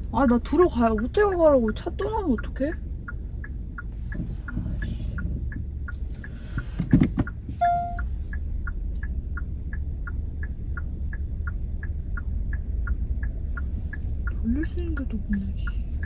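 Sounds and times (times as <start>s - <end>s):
car indicator ticking: 0.0s - 16.0s
car rumbling moving slowly: 0.0s - 16.0s
thump: 6.8s - 7.3s
short electronic beep: 7.6s - 8.1s.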